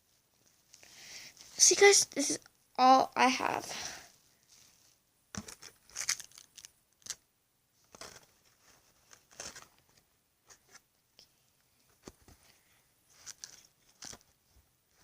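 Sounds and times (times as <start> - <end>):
crunchy slime crackling: 5.9 - 7.2.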